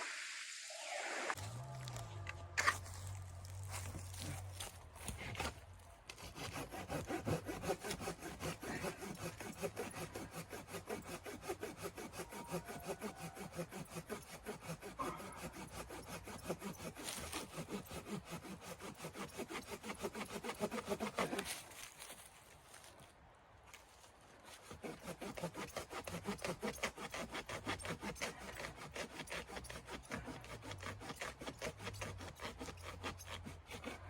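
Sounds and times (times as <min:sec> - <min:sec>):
hand saw cutting wood: 0:02.6 - 0:22.2, 0:24.4 - 0:34.0.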